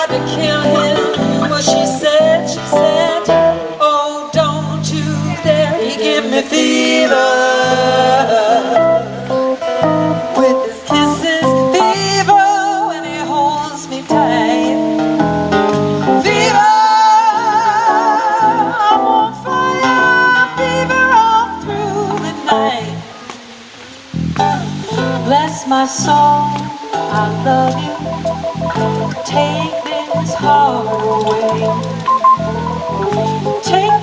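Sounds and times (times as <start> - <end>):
low bass notes: 0.0 - 3.8, 4.4 - 5.8, 7.7 - 12.4, 13.2 - 16.7, 24.1 - 34.0
person singing wavering notes: 0.0 - 3.8, 4.4 - 15.2, 16.2 - 34.0
plucked guitar: 0.0 - 3.8, 4.4 - 6.0, 8.7 - 23.5, 24.2 - 34.0.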